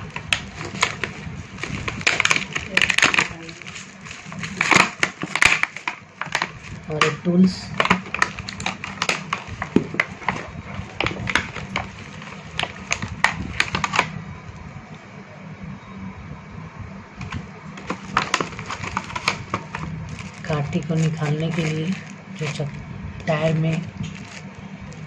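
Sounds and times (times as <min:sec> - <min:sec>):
tools and packaging clicking: 0:00.0 - 0:07.2, 0:07.8 - 0:14.1, 0:17.2 - 0:22.7.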